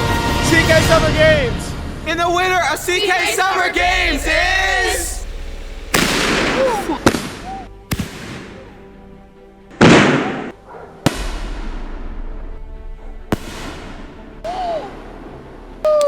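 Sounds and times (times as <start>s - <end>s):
quiet background music: 0.0s - 16.0s
fireworks bangs with crackle: 5.1s - 7.3s.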